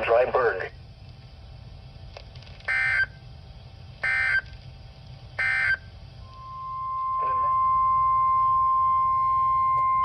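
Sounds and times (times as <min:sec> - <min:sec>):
warbling data tone bursts: 0:05.4 - 0:10.0.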